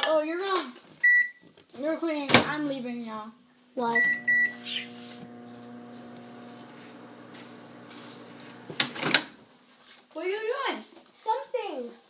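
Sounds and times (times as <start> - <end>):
microwave oven humming: 3.9 - 9.4
microwave keypad beeping: 4.0 - 5.2.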